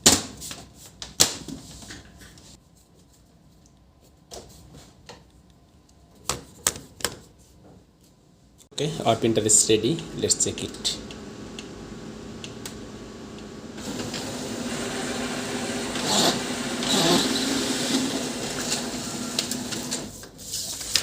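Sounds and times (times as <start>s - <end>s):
printer motor humming: 8.9s - 20.2s
paper rustling through printer: 11.1s - 21.0s.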